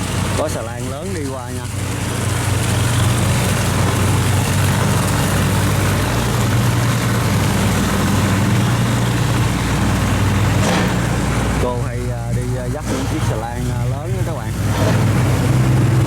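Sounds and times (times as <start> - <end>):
boat diesel engine droning: 0.0 - 16.0.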